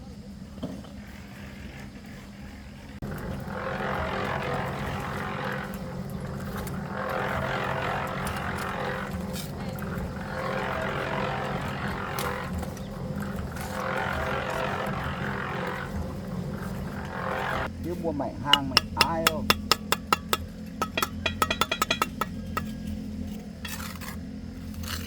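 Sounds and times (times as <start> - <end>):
machine motor humming: 3.0 - 17.7.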